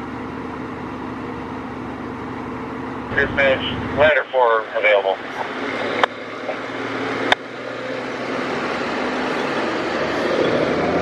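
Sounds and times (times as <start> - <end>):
fire engine running: 0.0 - 11.0.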